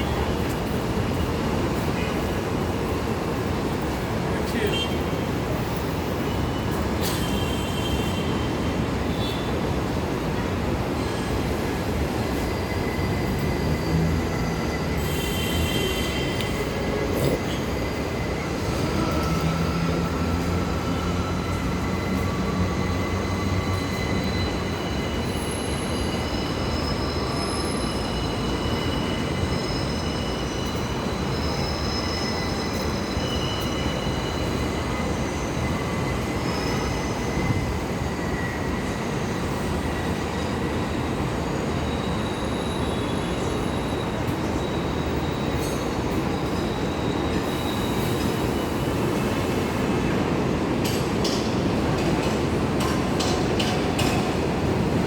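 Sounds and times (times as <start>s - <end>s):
train wheels rumbling on rails: 0.0s - 55.0s
high wheel squeals: 11.0s - 50.1s.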